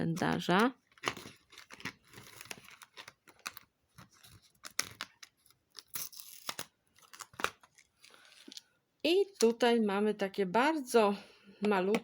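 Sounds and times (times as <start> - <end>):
packaging tearing and crinkling: 0.8 - 8.6.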